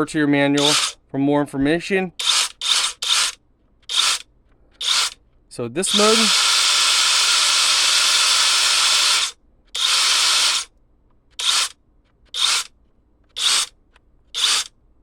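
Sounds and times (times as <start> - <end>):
impact wrench whirring: 0.6 - 1.0, 2.2 - 4.2, 4.8 - 5.2, 5.8 - 10.7, 11.4 - 12.7, 13.3 - 13.7, 14.3 - 14.7.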